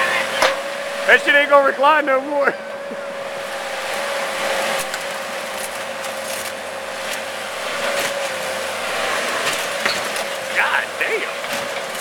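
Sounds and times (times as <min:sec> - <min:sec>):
excavator whining: 0:00.0 - 0:12.0.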